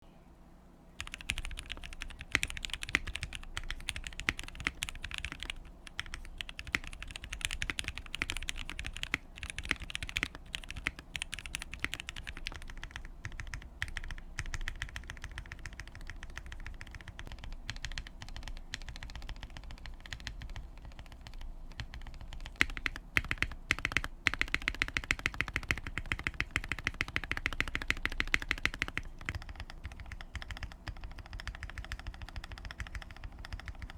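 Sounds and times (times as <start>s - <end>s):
mechanical keyboard typing: 1.0s - 33.9s.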